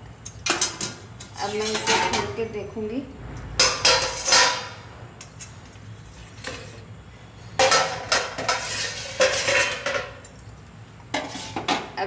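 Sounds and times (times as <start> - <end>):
metal cookware clattering: 0.3 - 2.5, 3.4 - 4.9, 7.6 - 12.0.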